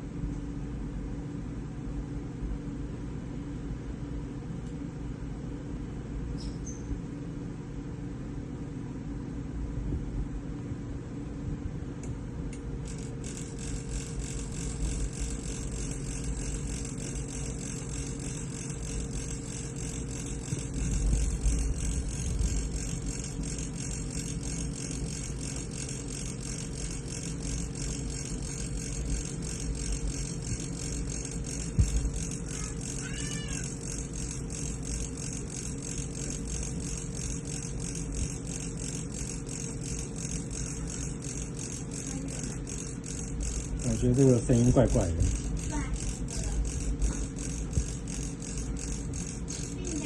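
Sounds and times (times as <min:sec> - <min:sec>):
electric oven humming: 0:00.0 - 0:50.0
fast fine rattle: 0:12.8 - 0:50.0.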